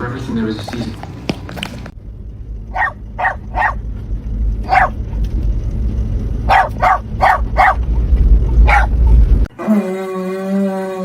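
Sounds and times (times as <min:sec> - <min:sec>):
steady low rumble: 0:00.0 - 0:09.5
dog barking: 0:02.7 - 0:03.8, 0:04.7 - 0:05.0, 0:06.5 - 0:07.8, 0:08.6 - 0:09.0.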